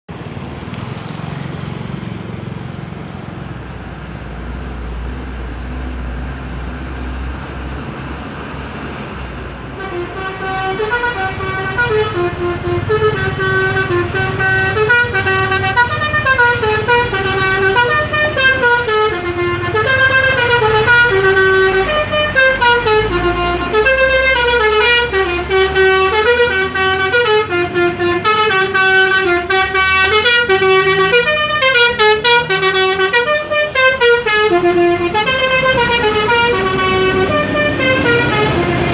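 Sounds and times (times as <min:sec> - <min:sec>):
bus engine running: 0:00.1 - 0:38.9
multi-note bus horn melody: 0:09.7 - 0:38.9.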